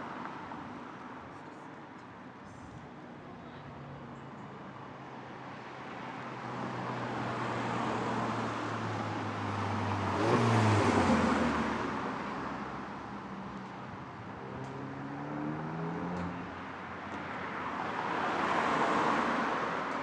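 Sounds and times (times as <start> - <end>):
car passing by: 6.7 - 12.7, 17.8 - 20.0.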